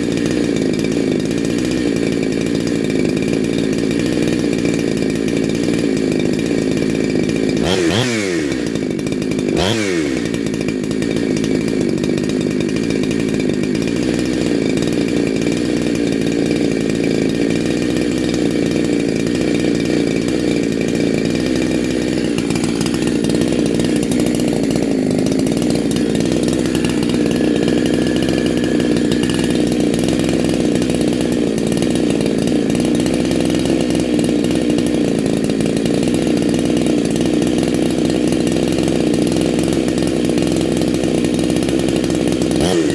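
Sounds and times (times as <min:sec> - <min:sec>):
chainsaw running at high revs: 0:00.0 - 0:42.9.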